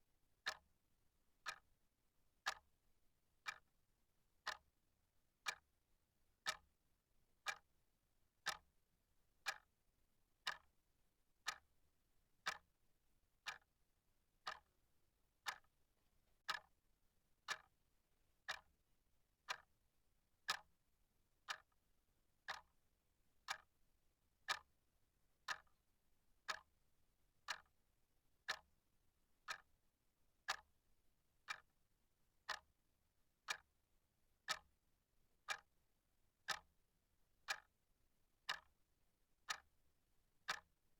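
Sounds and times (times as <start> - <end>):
clock ticking: 2.4 - 2.6, 3.4 - 3.6, 4.4 - 4.6, 5.4 - 5.6, 6.4 - 6.6, 7.4 - 7.6, 8.4 - 8.6, 9.4 - 9.6, 10.4 - 10.7, 11.4 - 11.6, 12.4 - 12.6, 13.4 - 13.7, 14.4 - 14.7, 15.4 - 15.7, 16.4 - 16.7, 17.5 - 17.7, 18.5 - 18.7, 19.5 - 19.7, 21.5 - 21.7, 22.5 - 22.7, 23.5 - 23.7, 25.5 - 25.7, 26.5 - 26.7, 27.5 - 27.7, 28.5 - 28.7, 29.4 - 29.7, 30.5 - 30.7, 31.5 - 31.7, 32.5 - 32.7, 33.5 - 33.7, 34.5 - 34.7, 35.5 - 35.7, 36.5 - 36.7, 37.5 - 37.7, 38.5 - 38.7, 39.5 - 39.7, 40.5 - 40.7.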